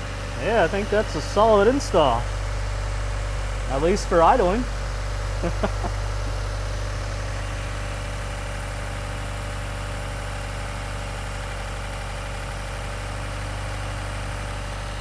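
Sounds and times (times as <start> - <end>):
car engine idling: 0.0 - 8.7.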